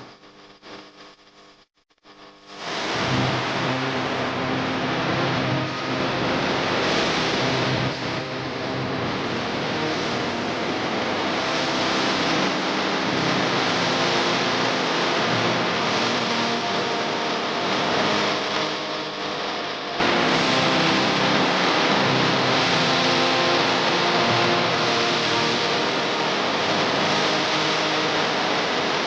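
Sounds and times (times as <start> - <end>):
dense background music: 20.0 - 29.0.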